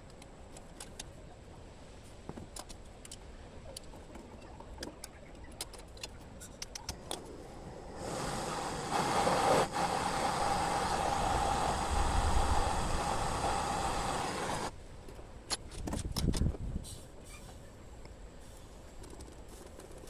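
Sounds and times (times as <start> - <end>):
gas hissing: 7.4 - 14.7.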